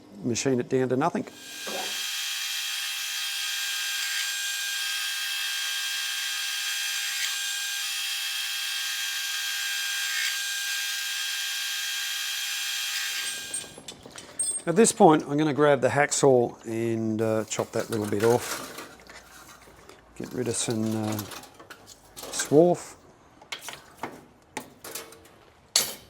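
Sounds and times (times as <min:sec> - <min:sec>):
hiss of cutting metal: 0:01.4 - 0:03.0
metal lathe whine: 0:01.4 - 0:13.8.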